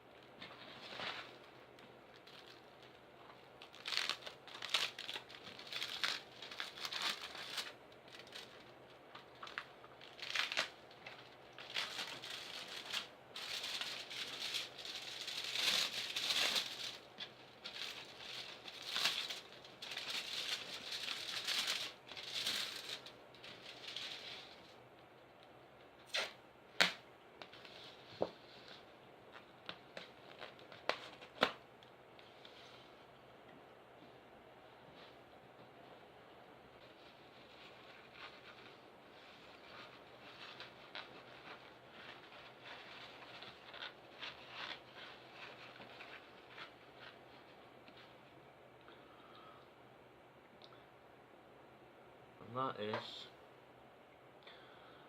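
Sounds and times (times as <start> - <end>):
packing material crinkling and tearing: 0.5 - 24.8, 29.3 - 31.6, 37.4 - 48.0.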